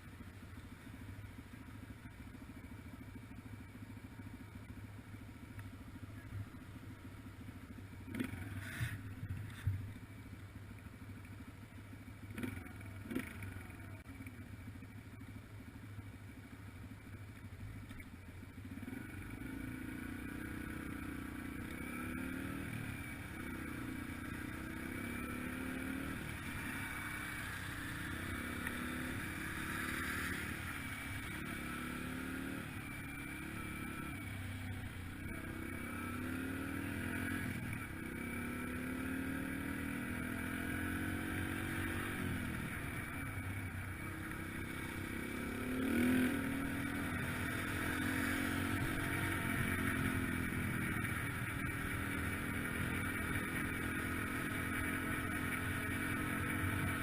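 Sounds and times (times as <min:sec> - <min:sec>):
dirt bike engine revving: 0:18.7 - 0:43.4, 0:44.0 - 0:57.0.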